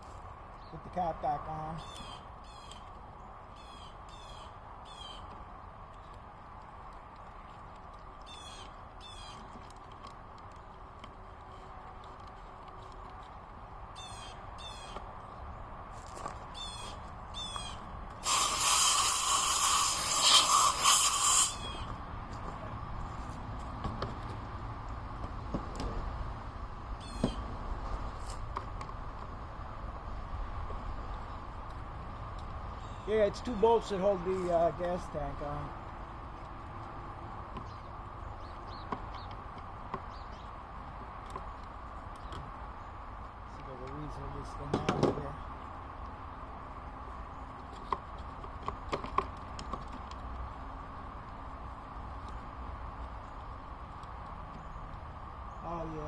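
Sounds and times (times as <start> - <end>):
bird calling: 16.5 - 17.9, 20.2 - 22.0
high wavering squeak: 16.6 - 21.9
background hiss: 18.2 - 21.9.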